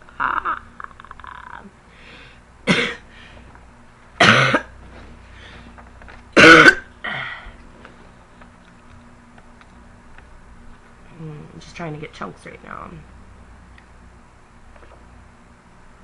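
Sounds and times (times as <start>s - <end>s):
girl coughing: 2.7s - 3.0s, 4.2s - 4.7s, 6.4s - 7.2s.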